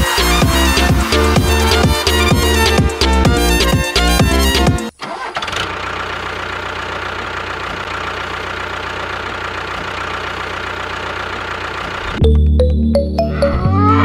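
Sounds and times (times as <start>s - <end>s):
engine starting and idling: 4.9s - 12.2s.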